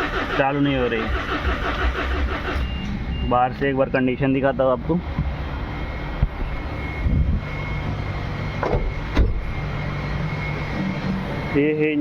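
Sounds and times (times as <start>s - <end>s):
low machine rumble: 0.0s - 12.0s
faint steady whine: 2.6s - 12.0s.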